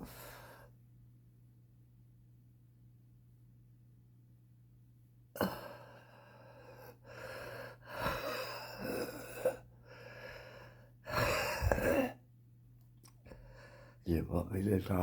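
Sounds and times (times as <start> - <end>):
wheezing breaths: 5.4 - 12.2.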